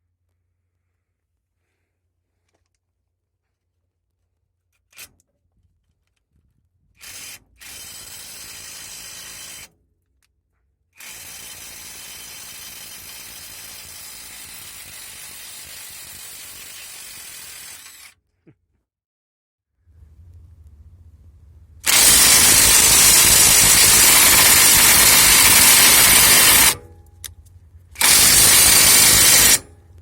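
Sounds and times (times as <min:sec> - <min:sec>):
impact wrench hammering: 0:21.8 - 0:27.4, 0:28.0 - 0:30.0.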